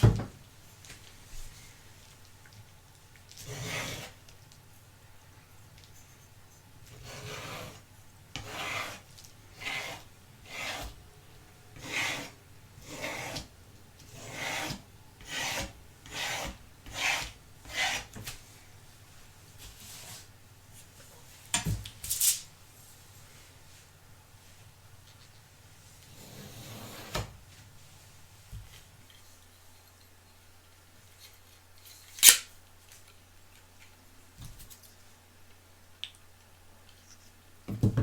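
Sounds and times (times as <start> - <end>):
rasping strokes on hard surface: 3.4 - 4.2, 6.9 - 7.8, 8.4 - 11.0, 11.8 - 18.2.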